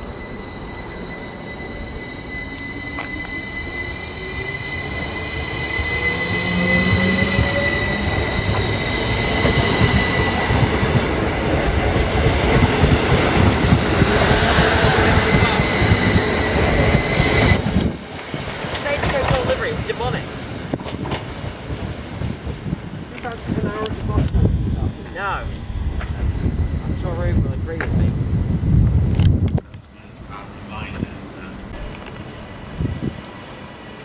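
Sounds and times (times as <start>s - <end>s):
high-pitched squeal: 0.0s - 18.0s, 24.3s - 28.5s
rising whine: 0.0s - 18.1s, 23.8s - 29.6s
train approaching: 0.0s - 34.0s.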